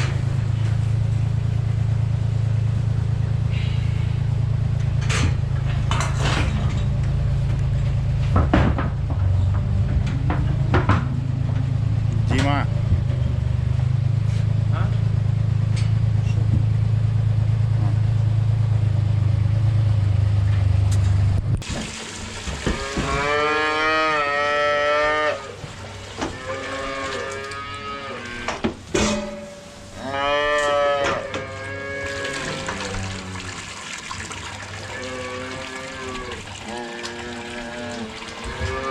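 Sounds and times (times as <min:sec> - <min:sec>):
steady low hum: 0:00.0 - 0:21.6
cattle mooing: 0:22.7 - 0:25.6, 0:26.2 - 0:28.6, 0:29.9 - 0:33.7, 0:34.7 - 0:38.9.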